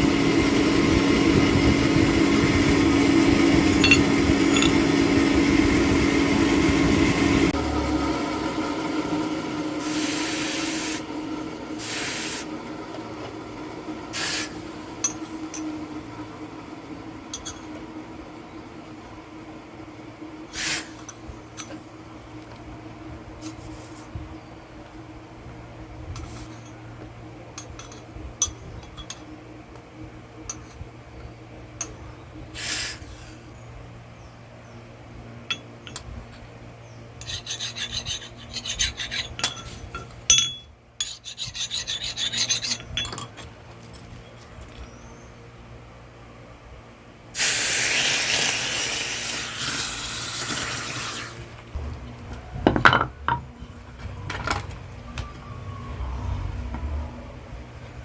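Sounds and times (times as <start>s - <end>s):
low steady hum: 0.0s - 8.7s
rasping abrasive strokes on steel: 37.2s - 39.7s, 41.0s - 42.9s.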